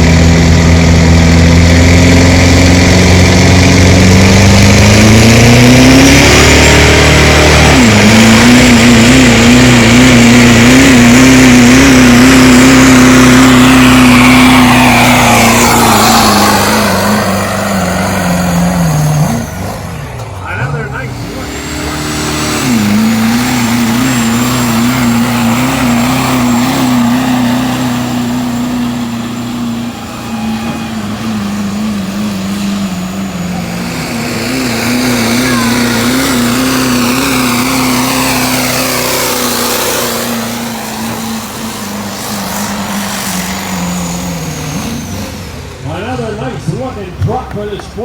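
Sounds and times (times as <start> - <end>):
truck engine revving under load: 0.0 - 48.0.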